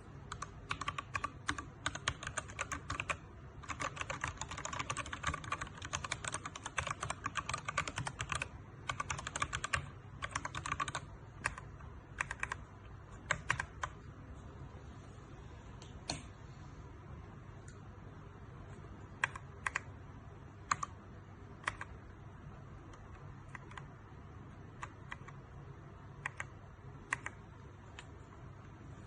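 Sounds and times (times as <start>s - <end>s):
mechanical keyboard typing: 0.3s - 14.0s, 19.2s - 19.9s, 20.6s - 21.0s, 21.6s - 22.0s, 22.9s - 23.9s, 24.7s - 25.4s, 26.2s - 28.1s.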